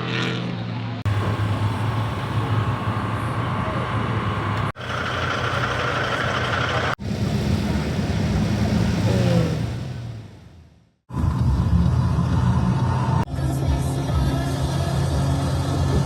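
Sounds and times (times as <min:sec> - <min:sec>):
car engine running: 0:01.0 - 0:13.3.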